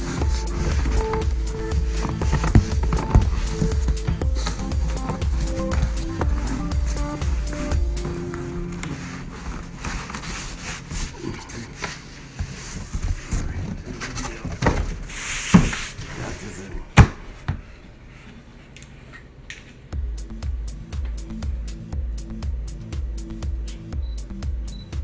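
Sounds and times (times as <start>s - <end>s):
background music with steady beat: 0.0s - 12.8s, 19.9s - 25.0s
packaging rustling: 0.0s - 16.0s.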